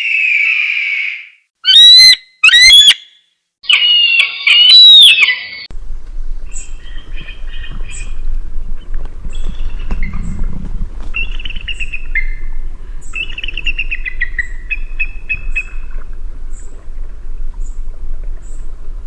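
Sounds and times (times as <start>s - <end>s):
eagle screeching: 0.0s - 5.7s
low outdoor rumble: 5.7s - 19.0s.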